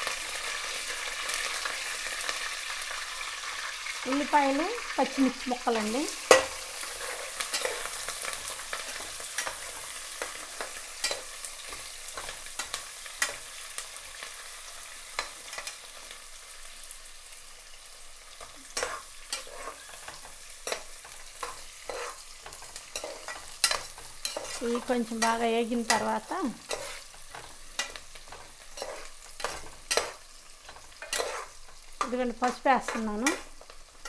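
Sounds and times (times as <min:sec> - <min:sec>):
onions sizzling in hot oil: 0:00.0 - 0:34.0
spatula scraping a pan: 0:05.8 - 0:16.2, 0:18.3 - 0:34.0.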